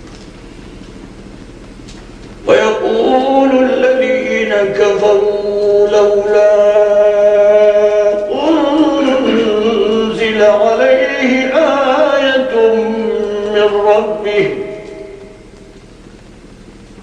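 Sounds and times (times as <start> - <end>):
man chanting melodically: 2.4 - 15.7.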